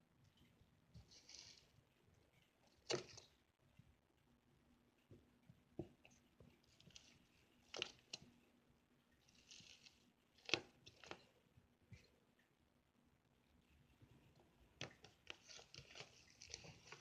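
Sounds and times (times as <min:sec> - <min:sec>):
slime clicks and crackles: 0:09.3 - 0:11.3.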